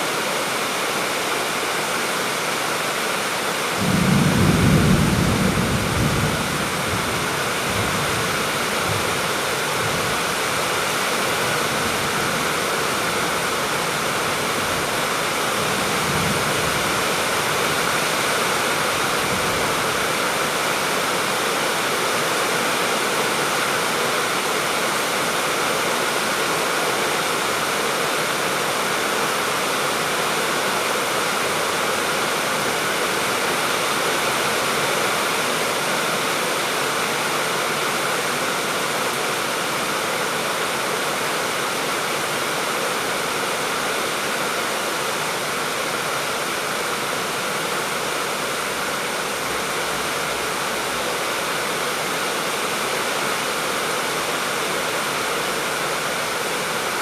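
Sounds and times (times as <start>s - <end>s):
steady rain: 0.0s - 57.0s
thunder rumble: 3.8s - 9.2s.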